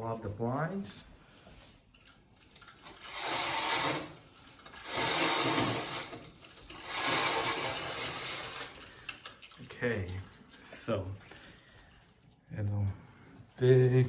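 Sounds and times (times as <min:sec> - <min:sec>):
window blinds cord rattling whir: 0:01.9 - 0:11.6.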